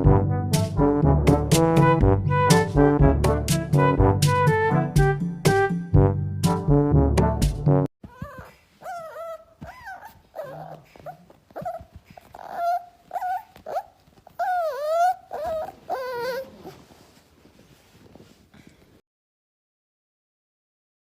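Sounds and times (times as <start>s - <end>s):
puppy whining and yelping: 8.0s - 17.2s.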